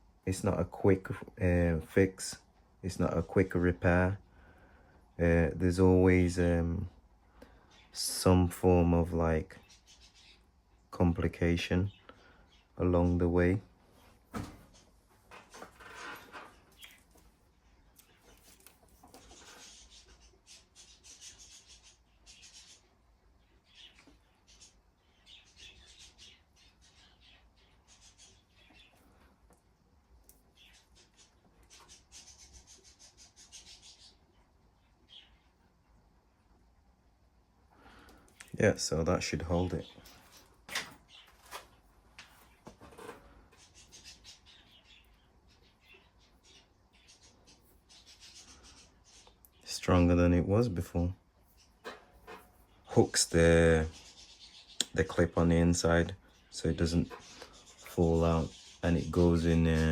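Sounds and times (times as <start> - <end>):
hands scratching and rustling wiring: 14.7 - 19.8, 40.0 - 44.0.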